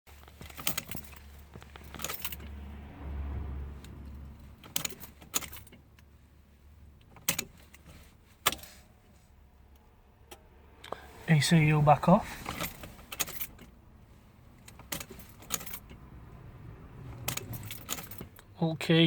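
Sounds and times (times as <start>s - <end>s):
keyring jangling: 0.4s - 2.4s, 12.4s - 13.7s, 14.8s - 15.9s, 17.2s - 18.4s
low hum: 8.9s - 13.1s.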